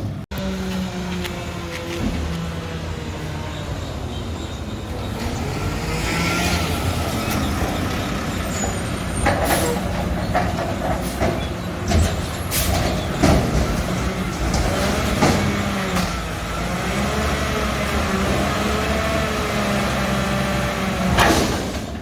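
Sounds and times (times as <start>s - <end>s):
diesel truck engine running: 0.0s - 22.0s
metal clanks and bangs: 4.4s - 19.2s, 19.9s - 22.0s.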